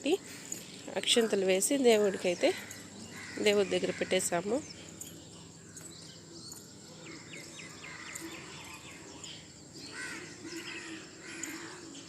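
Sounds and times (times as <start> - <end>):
bird chirps: 0.3 - 12.0
crow-like caws: 3.1 - 4.1, 9.9 - 11.9.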